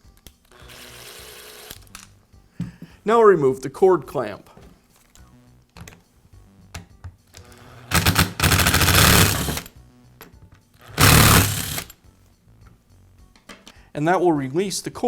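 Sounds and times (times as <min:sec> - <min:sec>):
power screwdriver running: 0:00.5 - 0:01.8, 0:07.4 - 0:09.7, 0:10.8 - 0:11.9.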